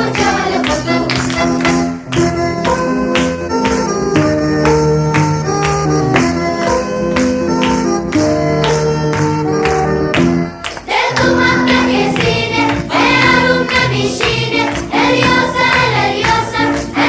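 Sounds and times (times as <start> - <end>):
choir singing in unison: 0.0 - 1.2, 10.9 - 17.0
steady drum beat music: 10.2 - 17.0.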